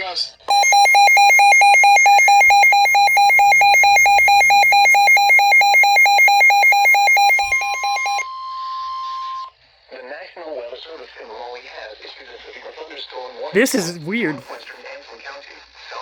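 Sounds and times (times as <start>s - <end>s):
rapid alarm beeping: 0.5s - 8.2s
steady warning alarm tone: 0.5s - 8.2s.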